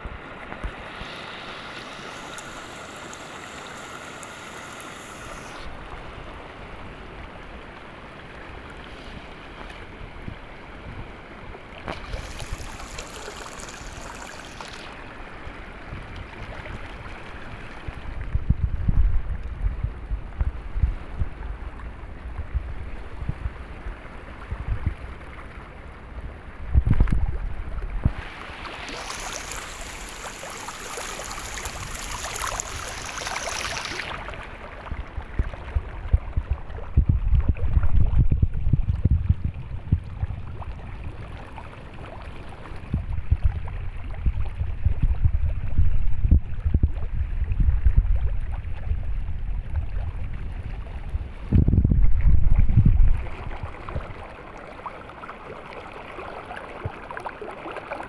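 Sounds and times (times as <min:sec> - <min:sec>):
water flowing: 0:00.0 - 0:06.5, 0:11.8 - 0:18.0, 0:28.0 - 0:36.2
bright rushing hiss: 0:00.8 - 0:05.7, 0:12.0 - 0:15.0, 0:28.1 - 0:34.4
wind buffeting microphone: 0:17.9 - 0:25.3, 0:26.0 - 0:29.1, 0:34.0 - 0:41.5, 0:42.8 - 0:54.3.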